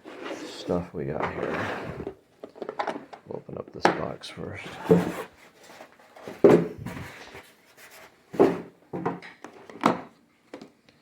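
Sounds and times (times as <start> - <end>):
cardboard box knocks and scrapes: 6.3 - 7.2.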